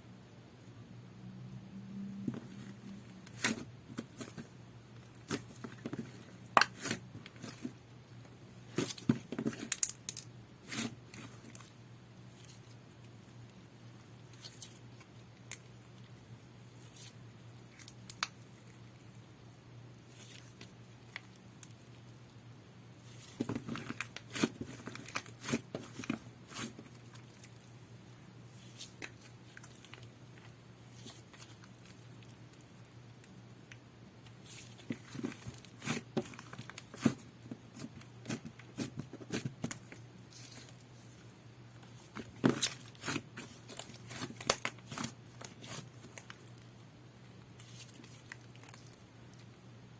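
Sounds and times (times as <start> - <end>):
slime squishing: 2.2 - 7.9, 8.6 - 13.4, 20.0 - 22.1, 23.0 - 27.7, 28.5 - 46.6, 47.5 - 49.5.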